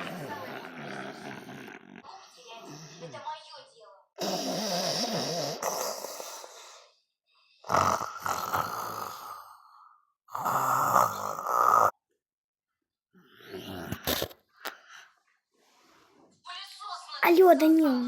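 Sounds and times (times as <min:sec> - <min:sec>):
man snoring: 0:00.0 - 0:02.0, 0:04.2 - 0:06.6, 0:07.6 - 0:12.0, 0:13.4 - 0:14.2.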